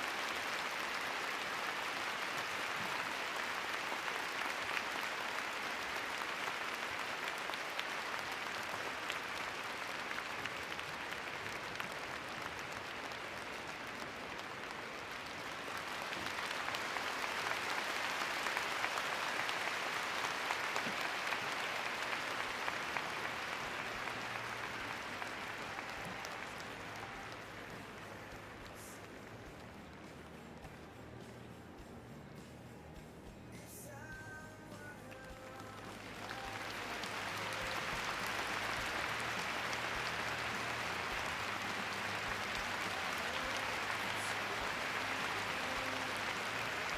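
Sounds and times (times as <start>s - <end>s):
audience applauding: 0.0s - 32.5s, 34.2s - 46.9s.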